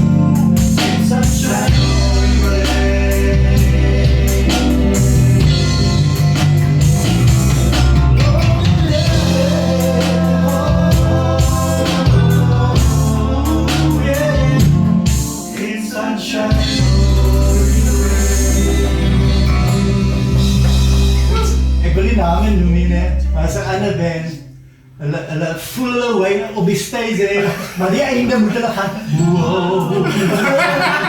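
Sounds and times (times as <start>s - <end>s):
drum beats: 0.0s - 15.8s, 16.5s - 22.7s
band playing a song: 0.0s - 22.7s.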